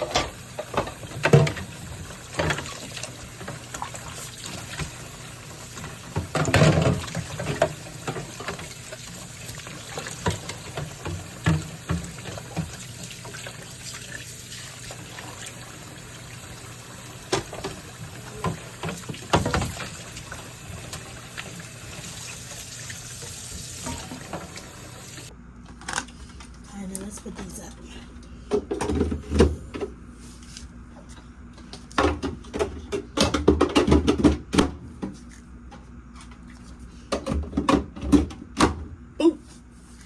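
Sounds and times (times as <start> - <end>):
tap water running into sink: 0.0 - 25.3
things clattering in sink: 0.0 - 25.3, 28.5 - 29.9, 31.6 - 35.2, 37.0 - 38.9.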